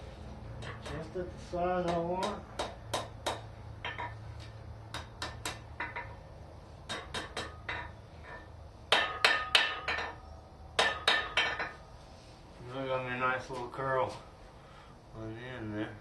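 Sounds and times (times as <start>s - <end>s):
hammer striking steel on anvil: 0.6s - 1.2s, 1.8s - 4.2s, 4.9s - 6.2s, 6.8s - 10.2s, 10.8s - 11.8s.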